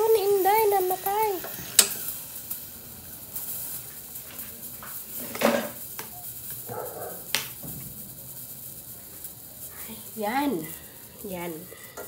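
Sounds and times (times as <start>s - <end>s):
kitchenware clinking and knocking: 5.2s - 5.8s.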